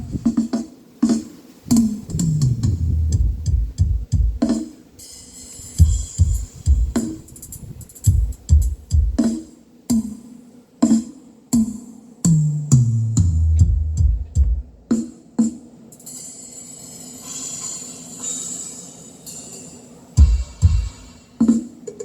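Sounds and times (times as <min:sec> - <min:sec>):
heavy kick drum thumps: 0:01.7 - 0:04.6, 0:05.8 - 0:07.2, 0:08.1 - 0:09.5, 0:13.2 - 0:14.9, 0:20.2 - 0:21.5
bass line: 0:02.0 - 0:04.3, 0:13.1 - 0:14.7.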